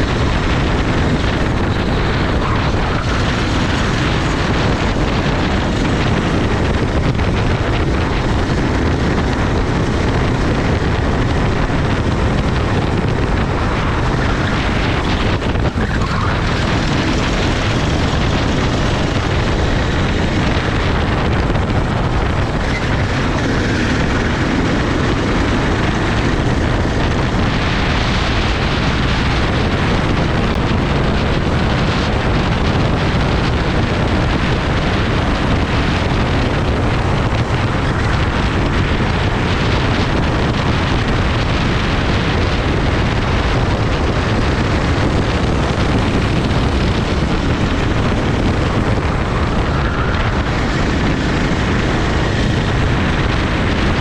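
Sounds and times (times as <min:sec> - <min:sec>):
kart engine running: 0:00.0 - 0:54.0
wind noise on microphone: 0:00.0 - 0:54.0.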